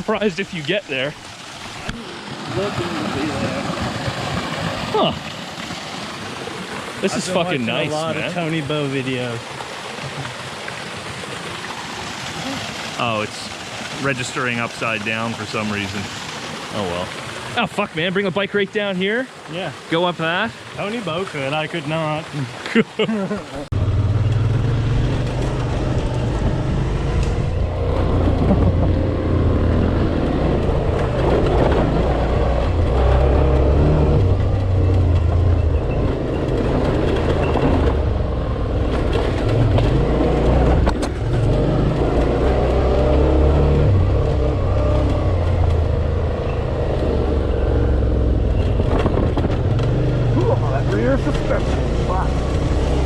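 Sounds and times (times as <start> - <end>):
motorcycle engine revving: 23.7 - 53.0.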